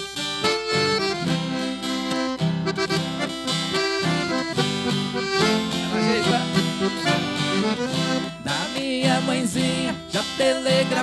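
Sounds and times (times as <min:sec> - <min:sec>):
accordion playing: 0:00.0 - 0:10.3
strummed guitar: 0:00.0 - 0:11.0
person singing: 0:05.1 - 0:11.0.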